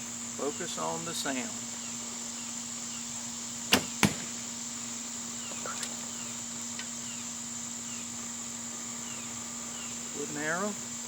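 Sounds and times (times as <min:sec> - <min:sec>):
crickets droning: 0:00.0 - 0:11.0
arrow striking target: 0:03.7 - 0:04.5
bow string release crack: 0:03.7 - 0:04.5.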